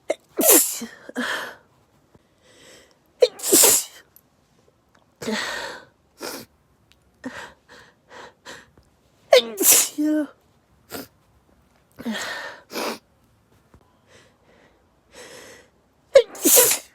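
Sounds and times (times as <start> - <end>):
person sneezing: 0.1 - 1.0, 3.2 - 4.0, 9.3 - 10.2, 16.2 - 16.9
quick breaths: 1.2 - 3.8, 14.0 - 16.9.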